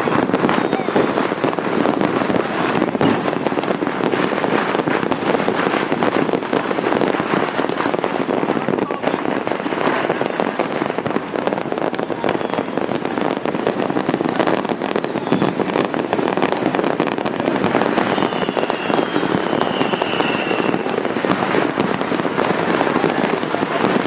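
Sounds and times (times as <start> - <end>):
firecrackers crackling and popping: 0.0 - 24.0
falling firework whistle: 2.6 - 7.9, 11.4 - 24.0.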